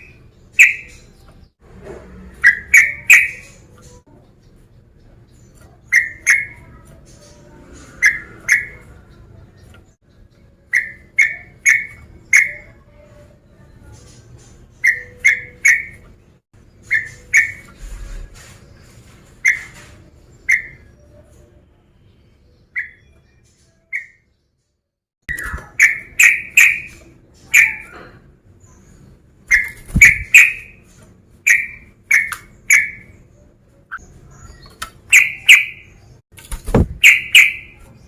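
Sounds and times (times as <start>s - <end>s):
bird whistled calls: 2.4s - 3.6s, 29.5s - 30.8s, 31.5s - 33.2s, 33.9s - 36.0s, 37.0s - 37.8s.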